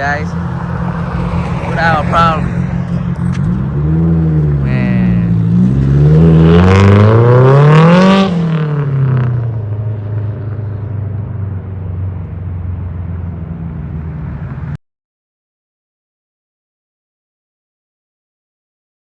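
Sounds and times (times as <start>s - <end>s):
car engine accelerating: 0.0s - 14.8s.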